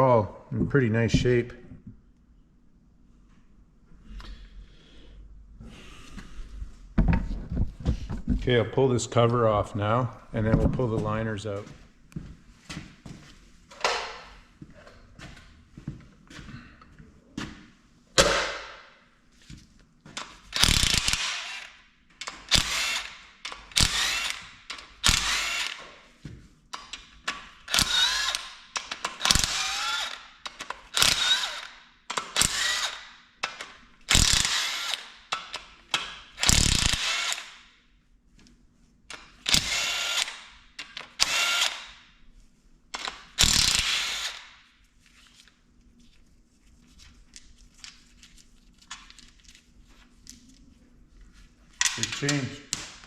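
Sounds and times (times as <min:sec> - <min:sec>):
powered ratchet spinning out bolts: 0:20.5 - 0:25.8, 0:27.7 - 0:35.7, 0:36.4 - 0:37.6, 0:39.1 - 0:41.9, 0:43.0 - 0:44.5.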